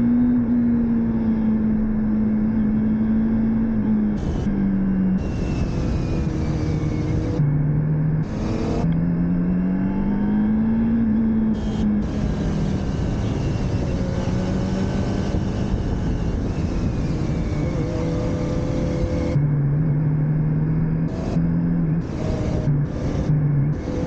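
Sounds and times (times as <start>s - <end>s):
motorcycle engine running: 0.0s - 24.0s
wind noise: 3.3s - 9.2s, 11.0s - 19.8s, 20.9s - 24.0s.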